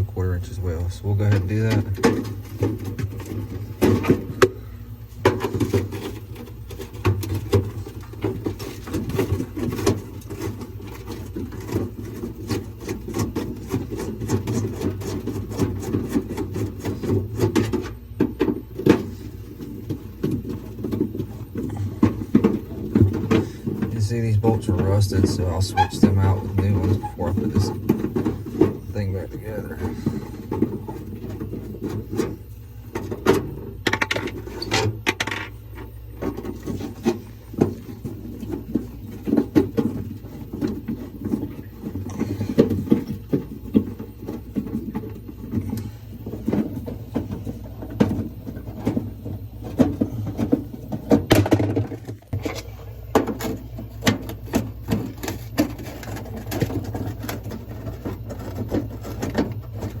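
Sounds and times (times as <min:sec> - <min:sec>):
refrigerator compressor hum: 0:00.0 - 1:00.0.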